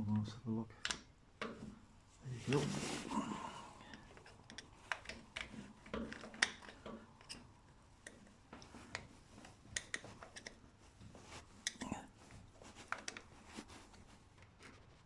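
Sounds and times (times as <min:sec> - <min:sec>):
hand tools clicking and tapping: 0:00.8 - 0:01.8, 0:03.9 - 0:10.6.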